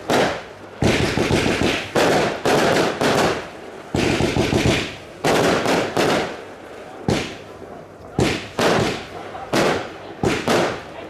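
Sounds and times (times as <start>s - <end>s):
fireworks bursting with sharp bangs: 0.0s - 11.0s.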